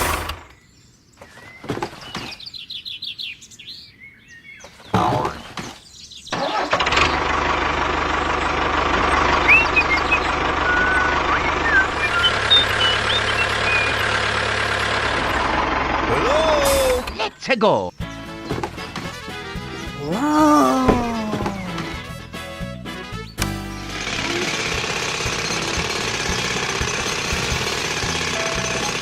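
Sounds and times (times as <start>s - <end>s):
birds chirping: 0.4s - 29.0s
vehicle engine running: 6.5s - 17.2s, 18.0s - 29.0s.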